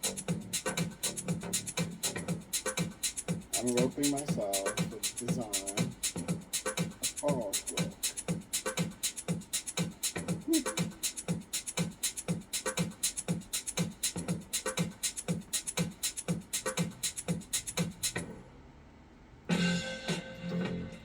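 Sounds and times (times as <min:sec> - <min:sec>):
fast percussion beat: 0:00.0 - 0:18.3
music with held notes: 0:19.5 - 0:21.0.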